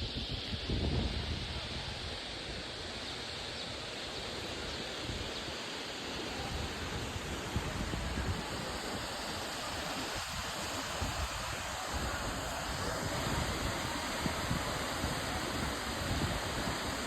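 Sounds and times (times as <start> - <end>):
wind buffeting microphone: 0.0 - 2.7, 6.4 - 17.0
waterfall rushing: 5.5 - 17.0.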